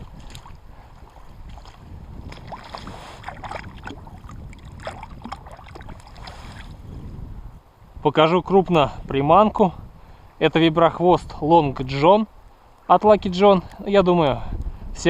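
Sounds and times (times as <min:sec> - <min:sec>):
small splashes and knocks: 0:00.0 - 0:06.8
water lapping: 0:00.0 - 0:06.9
wind rumbling on microphone: 0:00.0 - 0:15.0.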